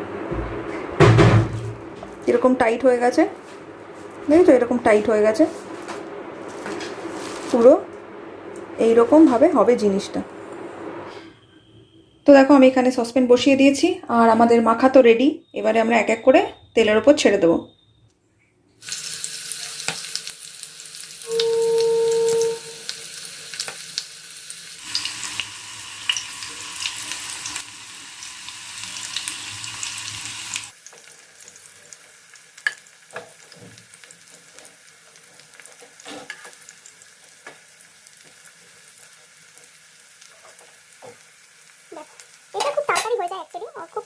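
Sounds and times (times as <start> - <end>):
fritters sizzling in hot oil: 5.5 - 7.7, 18.8 - 44.0
short steady tone: 10.6 - 12.2, 21.2 - 23.0.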